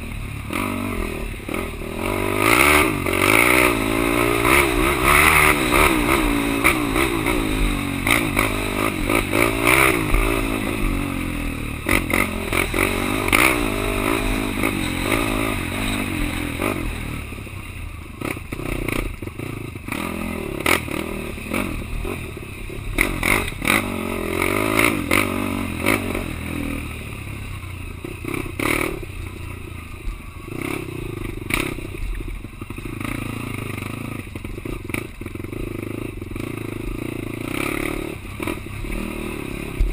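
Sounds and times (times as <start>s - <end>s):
quad engine revving: 0.0s - 17.5s, 18.2s - 29.2s, 30.5s - 39.9s
knocks and clatter over rough ground: 30.6s - 39.2s.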